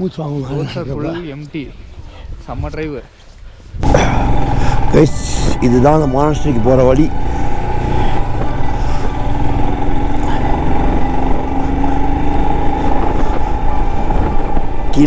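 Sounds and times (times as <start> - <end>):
motorcycle engine running: 3.8 - 15.0.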